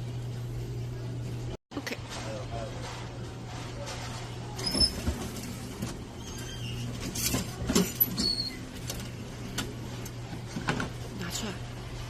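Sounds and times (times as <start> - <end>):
low machine hum: 0.0 - 12.0
short high squeaks: 8.1 - 8.6.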